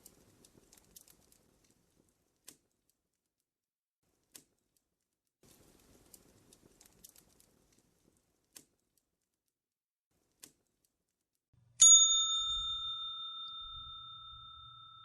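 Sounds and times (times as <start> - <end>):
faint crackles: 0.0 - 11.4
bell-like chime ringing: 11.8 - 15.0.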